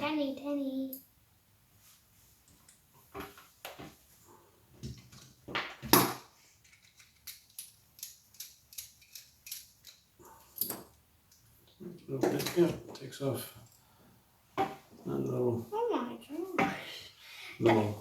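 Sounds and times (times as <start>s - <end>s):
metallic clicks of small parts: 6.6s - 11.5s.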